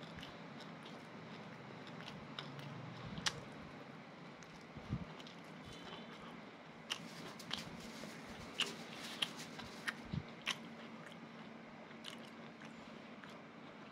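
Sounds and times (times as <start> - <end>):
faint steady hum: 0.0 - 13.9
person eating crunchily: 4.4 - 13.9.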